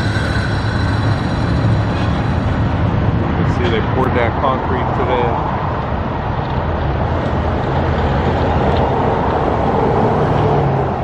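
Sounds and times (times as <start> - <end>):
low engine hum: 0.0 - 11.0
road traffic rushing past: 0.0 - 11.0.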